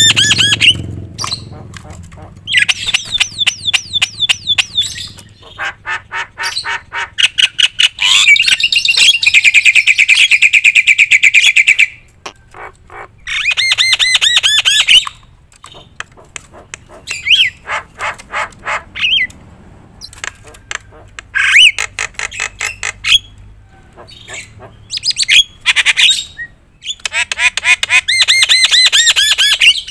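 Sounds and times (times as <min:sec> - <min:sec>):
bird singing clicks and whistles: 0:00.0 - 0:05.4, 0:11.7 - 0:19.4, 0:20.0 - 0:23.5, 0:26.8 - 0:29.9.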